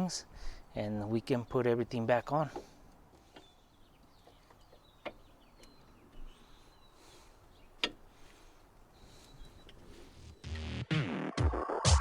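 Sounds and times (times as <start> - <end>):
faint bird chirps: 3.3 - 8.2, 9.0 - 9.8.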